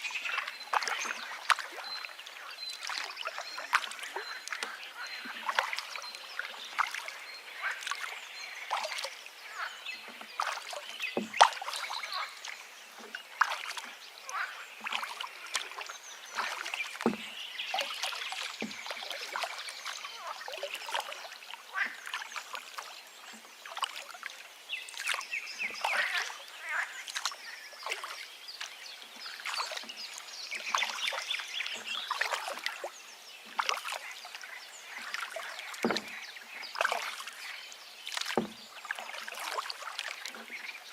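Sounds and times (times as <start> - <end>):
river water babbling: 0.0 - 40.9
birds calling: 0.2 - 24.1.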